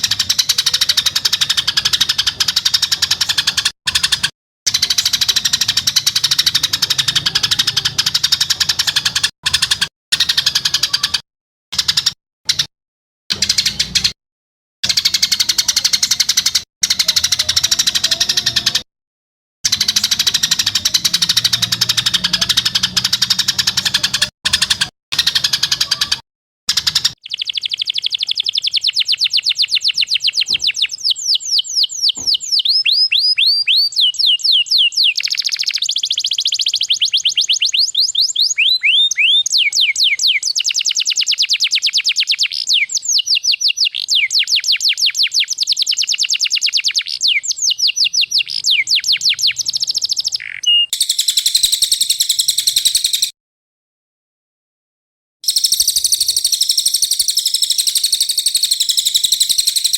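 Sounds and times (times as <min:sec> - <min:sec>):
harsh bird trill: 0:00.0 - 0:12.7, 0:13.3 - 0:14.2, 0:14.8 - 0:18.9, 0:19.6 - 0:53.4, 0:55.4 - 0:59.9
songbird whistled notes: 0:27.2 - 0:53.3, 0:55.5 - 0:59.9.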